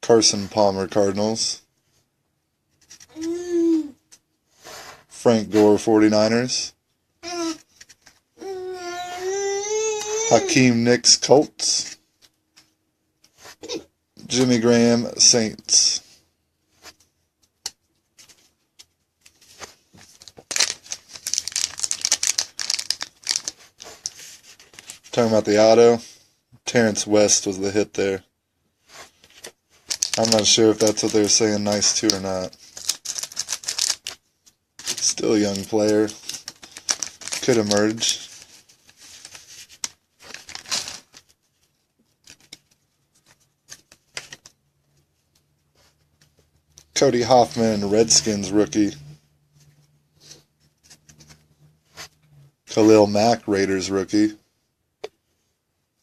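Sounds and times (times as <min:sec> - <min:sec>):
trading cards rustling: 0:17.8 - 0:25.8, 0:28.9 - 0:44.6, 0:45.8 - 0:48.9, 0:49.6 - 0:53.8
foil wrapper crinkling: 0:20.1 - 0:25.0, 0:29.8 - 0:34.2, 0:34.8 - 0:41.4.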